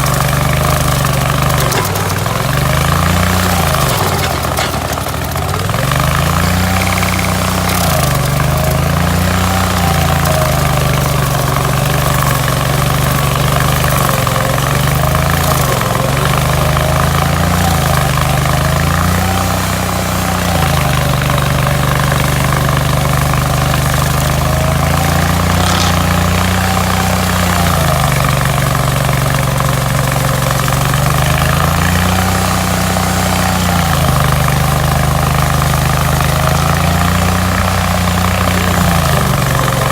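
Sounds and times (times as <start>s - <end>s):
stump grinder engine lugging: 0.0s - 39.9s.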